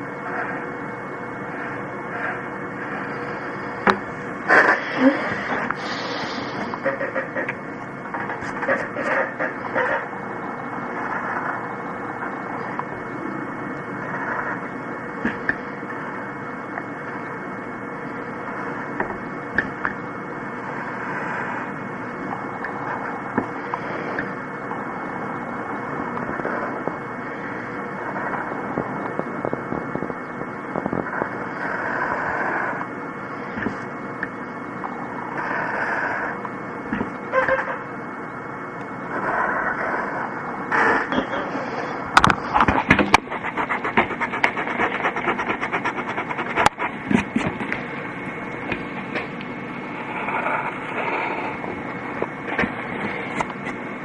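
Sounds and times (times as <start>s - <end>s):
pencil drawing on paper: 42.8s - 47.6s.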